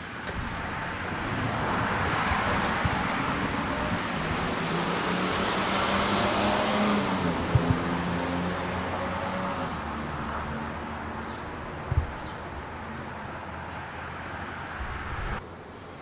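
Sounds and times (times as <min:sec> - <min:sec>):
engine hum: 0:00.0 - 0:16.0
vehicle passing by: 0:00.3 - 0:15.4
small knocks: 0:07.4 - 0:08.0, 0:11.8 - 0:13.2.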